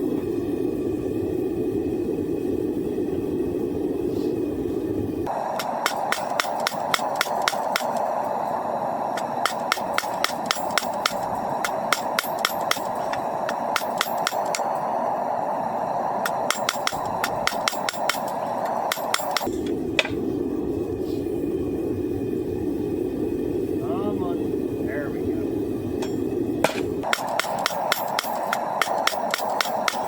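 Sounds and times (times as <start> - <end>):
steady rushing noise: 0.0 - 30.0
hammer striking steel on anvil: 5.5 - 8.2, 9.2 - 14.8, 16.2 - 20.2, 26.0 - 30.0.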